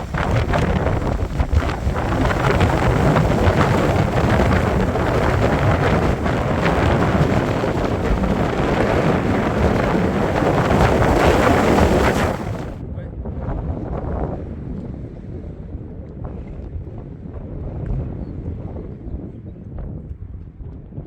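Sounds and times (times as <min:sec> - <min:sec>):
wind buffeting microphone: 0:00.0 - 0:21.0.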